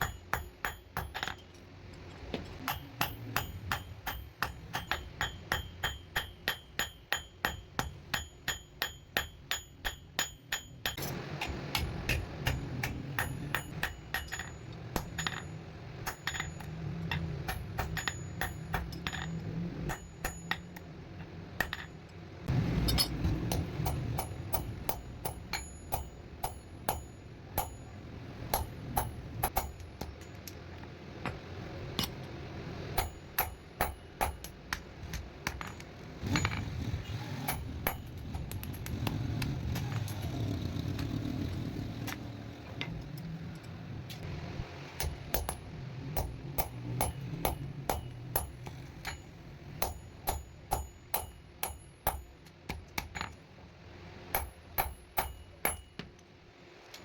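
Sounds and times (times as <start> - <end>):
hammer striking metal: 0.0 - 1.6, 2.3 - 30.6, 33.0 - 36.8, 37.4 - 38.9, 45.0 - 53.4, 54.3 - 56.1.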